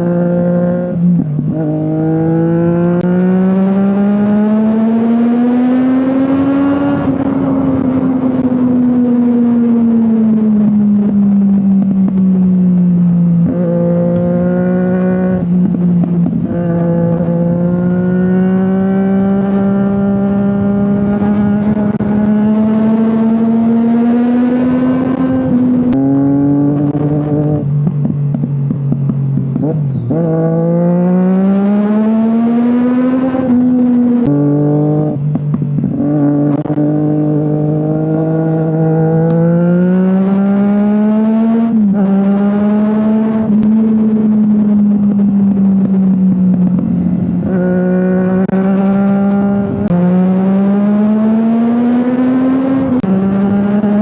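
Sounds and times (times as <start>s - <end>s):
motorcycle engine accelerating: 0.0s - 54.0s
wind noise: 0.0s - 54.0s.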